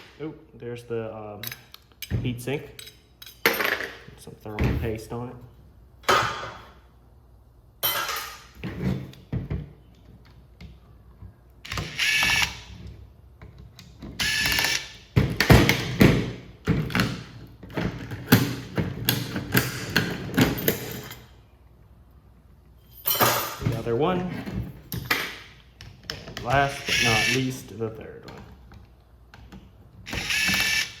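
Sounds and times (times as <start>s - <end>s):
screwdriver whirring: 11.7s - 12.8s, 14.2s - 15.0s, 26.8s - 27.4s, 30.1s - 31.0s.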